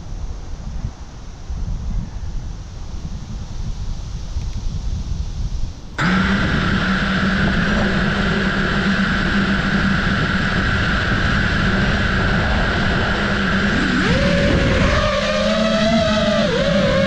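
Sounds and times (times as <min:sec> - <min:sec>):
wind on microphone: 0:00.0 - 0:17.0
drone motors whining: 0:06.0 - 0:17.0.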